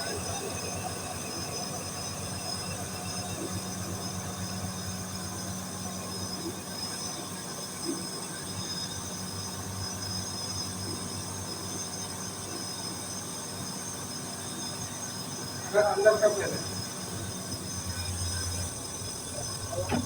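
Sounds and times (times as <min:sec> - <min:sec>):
high-pitched whining tones: 0:14.8 - 0:20.0.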